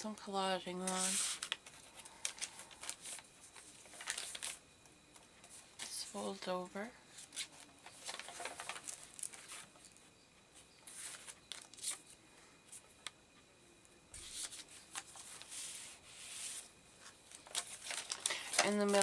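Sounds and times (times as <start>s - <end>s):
paper rustling and crinkling: 0.8s - 4.6s, 7.1s - 10.0s, 10.8s - 12.1s, 14.1s - 19.0s.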